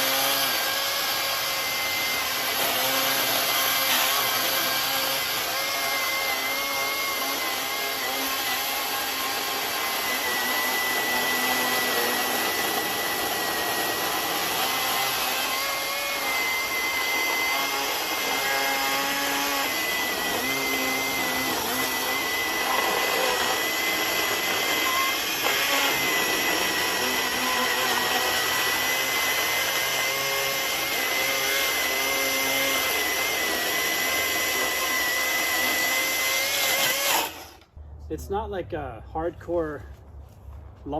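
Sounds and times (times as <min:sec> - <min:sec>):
chainsaw motor whining: 0:00.0 - 0:37.7.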